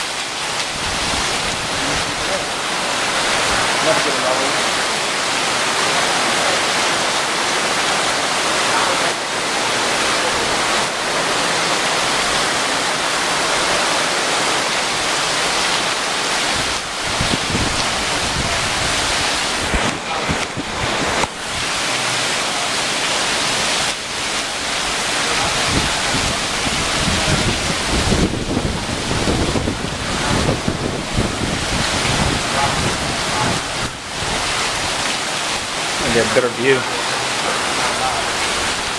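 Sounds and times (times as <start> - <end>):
wind rumbling on microphone: 0.0 - 4.0, 9.8 - 22.5, 23.1 - 36.2
heavy rain pouring: 0.0 - 38.9.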